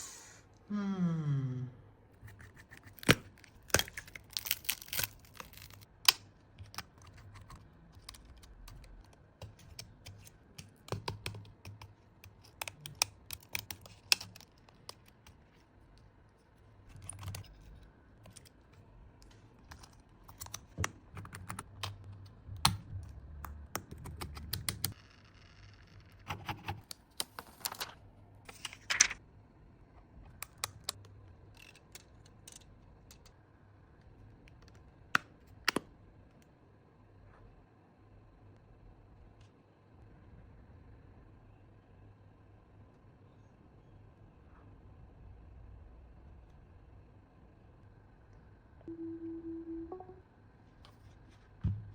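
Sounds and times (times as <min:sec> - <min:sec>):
faint low hum: 0:27.8 - 0:51.9.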